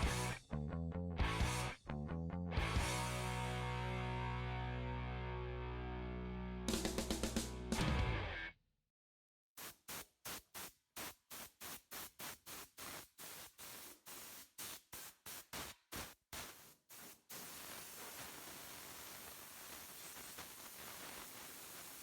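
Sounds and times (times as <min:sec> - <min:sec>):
steady hiss: 0:16.4 - 0:22.0.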